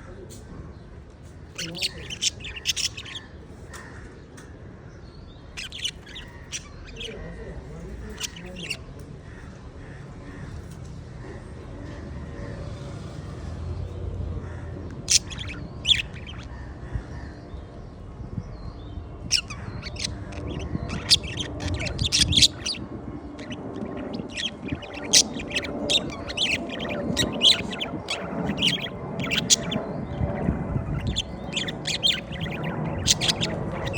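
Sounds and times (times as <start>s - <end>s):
birds chirping: 0.0s - 33.9s
low steady rumble: 13.4s - 33.9s.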